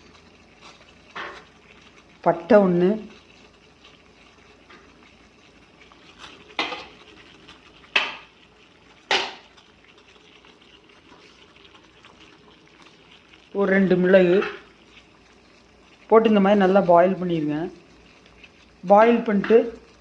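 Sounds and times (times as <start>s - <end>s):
water boiling: 0.0s - 20.0s.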